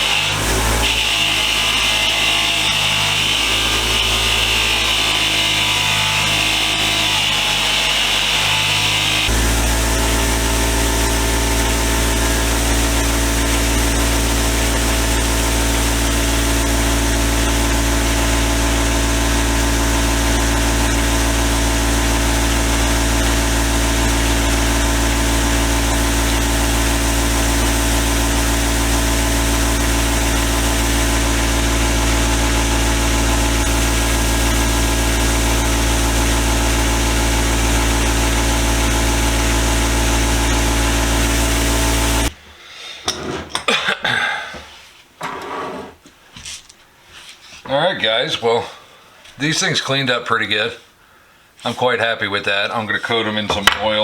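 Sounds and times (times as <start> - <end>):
power tool motor hum: 0.0 - 42.4.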